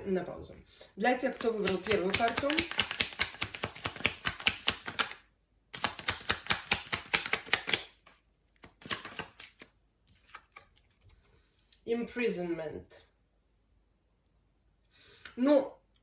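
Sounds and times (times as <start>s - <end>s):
cards being shuffled: 1.1s - 11.8s.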